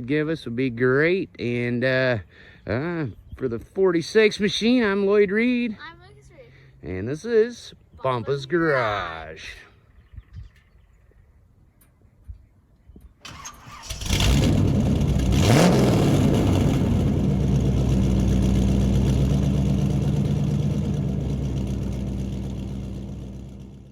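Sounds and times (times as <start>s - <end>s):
small engine starting and idling: 13.2s - 23.9s.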